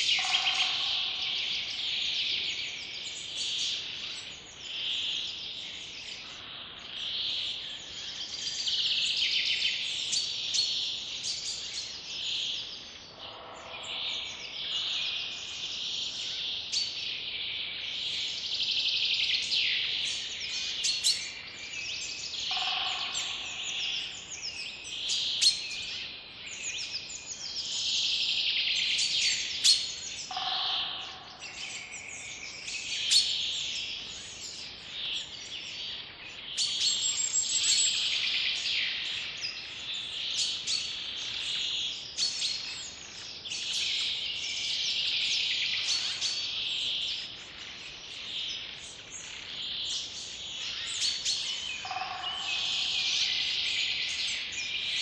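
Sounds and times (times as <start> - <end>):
songbirds chirping and trilling: 0.0 - 55.0
lower-pitched bird call: 22.5 - 24.2, 29.7 - 33.3.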